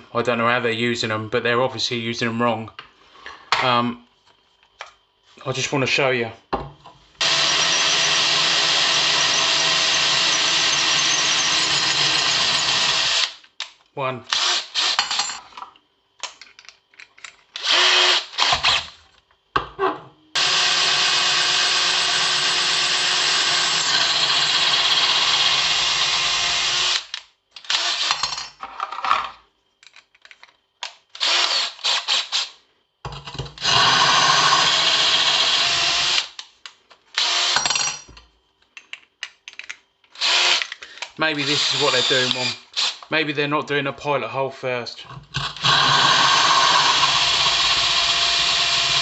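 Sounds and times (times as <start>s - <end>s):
power drill drilling: 7.2s - 13.4s, 14.3s - 15.0s, 17.6s - 19.0s, 20.4s - 27.1s, 27.7s - 28.2s, 31.2s - 32.5s, 33.6s - 36.4s, 37.2s - 37.6s, 40.2s - 40.6s, 41.4s - 43.0s, 45.4s - 49.0s.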